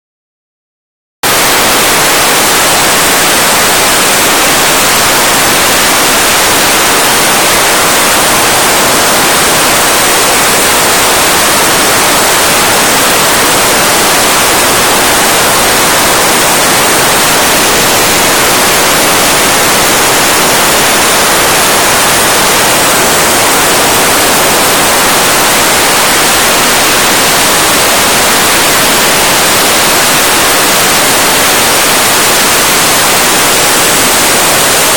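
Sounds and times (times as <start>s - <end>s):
soda blaster hissing: 1.3s - 34.9s.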